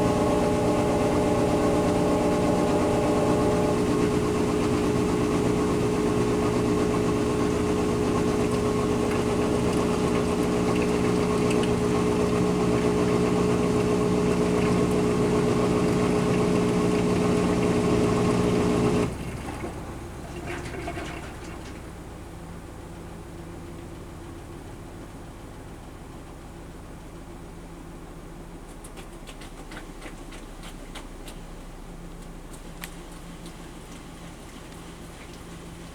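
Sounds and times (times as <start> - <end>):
quiet rumble: 0.0 - 7.1
washing machine spinning: 0.0 - 21.9.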